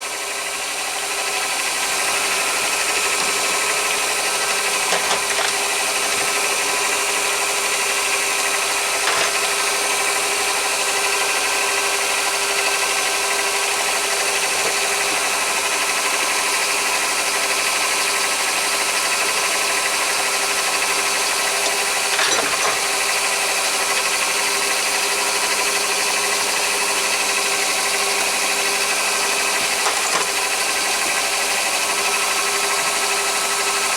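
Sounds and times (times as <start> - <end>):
lathe motor and gears whine: 0.0 - 33.9
blade cutting brass: 19.3 - 24.1.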